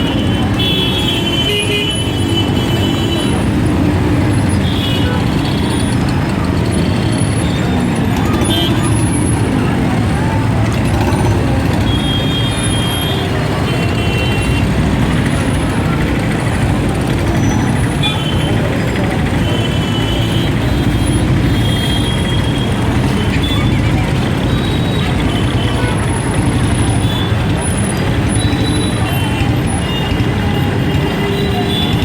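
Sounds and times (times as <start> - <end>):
car horns: 0.0 - 9.8, 16.4 - 32.0
many vehicle engines running: 0.0 - 32.0.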